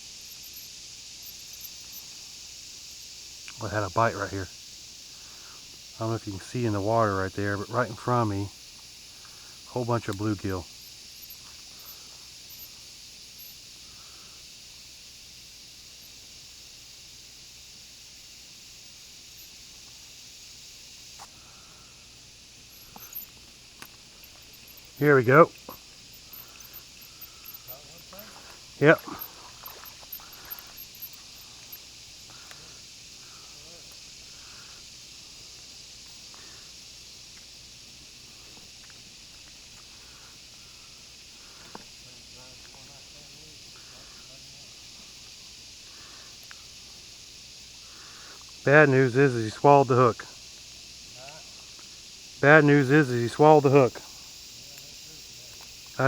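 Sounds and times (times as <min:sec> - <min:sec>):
steady high hiss: 0:00.0 - 0:56.0
faint small clicks: 0:21.2 - 0:21.4, 0:22.8 - 0:24.8, 0:33.9 - 0:34.1, 0:37.3 - 0:37.5, 0:38.5 - 0:39.9, 0:41.6 - 0:41.9, 0:46.4 - 0:46.6.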